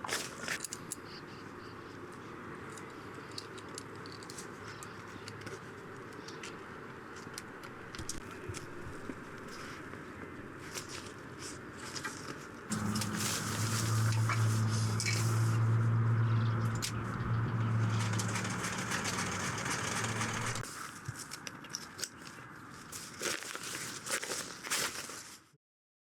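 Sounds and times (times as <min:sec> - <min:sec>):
sewing machine humming: 0:12.7 - 0:15.8, 0:16.6 - 0:20.6.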